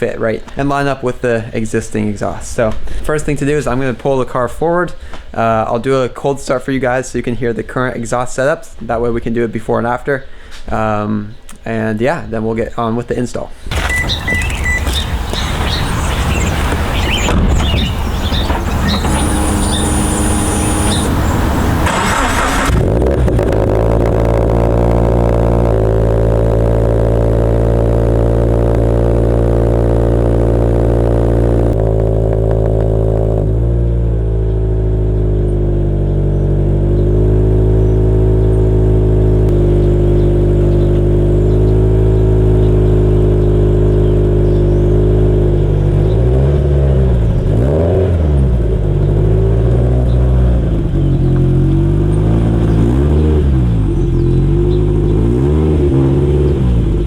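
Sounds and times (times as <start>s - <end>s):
car engine idling and revving: 13.7s - 57.0s.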